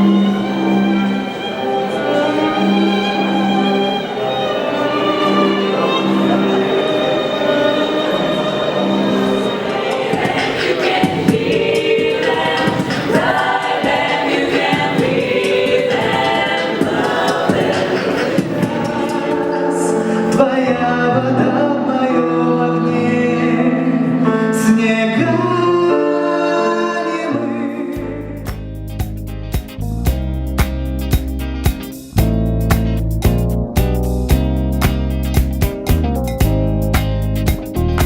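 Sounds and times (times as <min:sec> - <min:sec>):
choir singing: 0:00.0 - 0:28.2
bass notes: 0:27.4 - 0:38.0.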